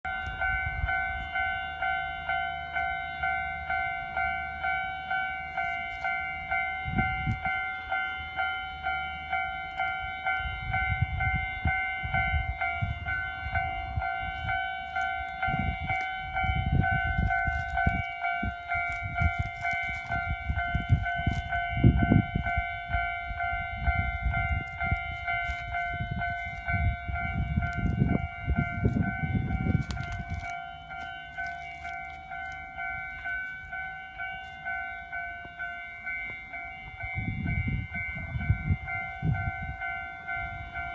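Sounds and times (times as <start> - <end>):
level crossing warning bell ringing: 0.0 - 40.9
electric train rumbling past: 0.1 - 40.9.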